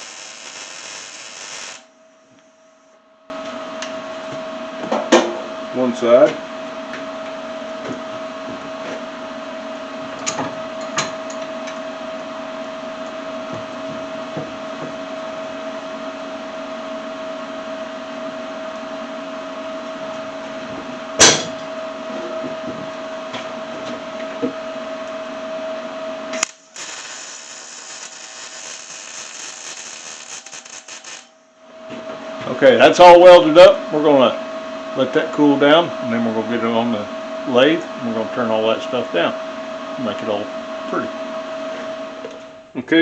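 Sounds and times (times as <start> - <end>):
high hiss: 0.0 - 1.9, 26.4 - 31.2
electric welder humming: 0.0 - 2.0, 26.3 - 31.6
welder clicks: 26.4 - 31.2
sharp crack: 26.4 - 31.3.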